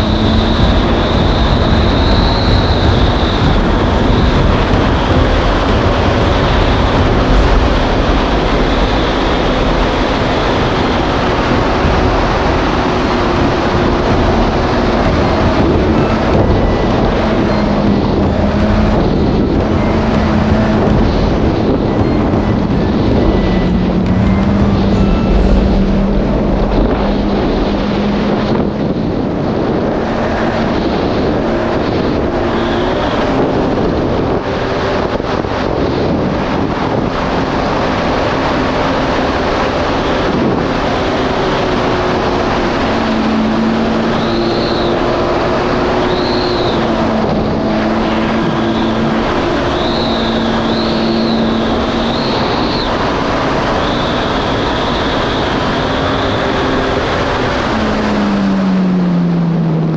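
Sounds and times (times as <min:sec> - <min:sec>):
jet ski engine running: 0:00.0 - 0:30.2
high whine: 0:00.0 - 0:59.9
wind noise on microphone: 0:00.0 - 0:59.9.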